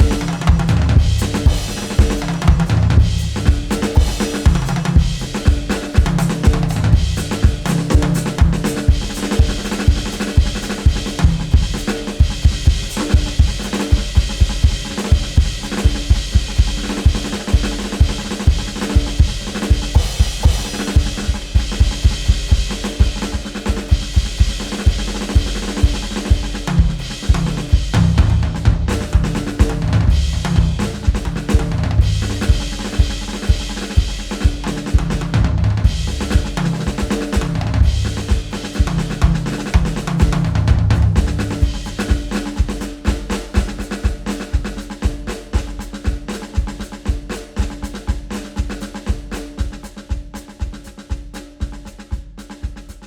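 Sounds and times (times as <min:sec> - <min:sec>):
bass line: 0:00.0 - 0:05.4, 0:06.4 - 0:08.6, 0:27.9 - 0:32.6, 0:35.3 - 0:36.9, 0:37.5 - 0:39.2, 0:40.4 - 0:41.8
drum kit beats: 0:00.0 - 0:53.0.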